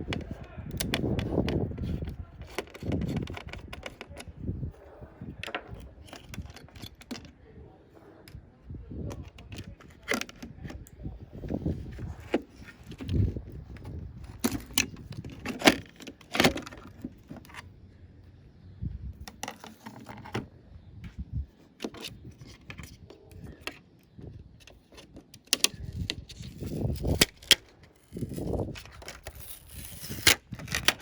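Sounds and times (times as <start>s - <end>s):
clicks and clinks of parts: 5.4s - 7.4s, 9.1s - 11.0s, 12.2s - 17.7s, 19.2s - 20.4s, 24.6s - 31.0s
short scrapes of prying: 24.6s - 31.0s.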